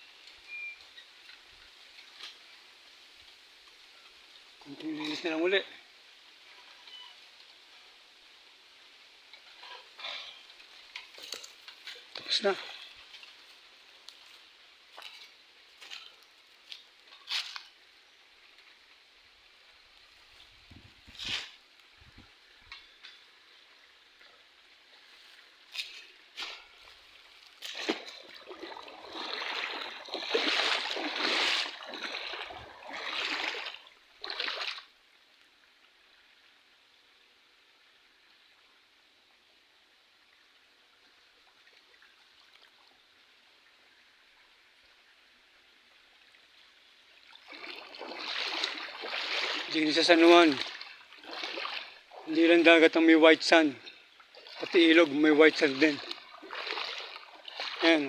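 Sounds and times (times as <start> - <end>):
river water flowing: 0.0 - 58.0.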